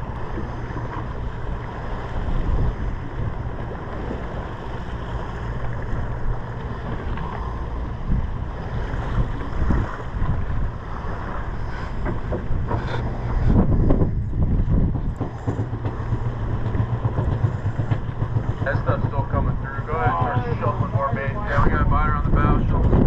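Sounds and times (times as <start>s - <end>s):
boat engine humming: 0.0s - 23.0s
water noise: 0.0s - 23.0s
wind on microphone: 0.0s - 23.0s.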